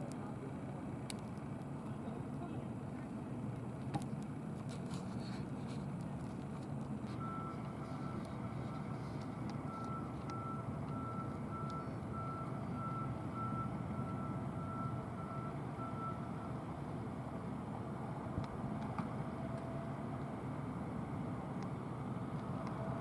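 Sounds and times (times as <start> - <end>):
low engine rumble: 0.0 - 23.0
reversing alarm beeping: 7.2 - 9.0, 9.6 - 16.6.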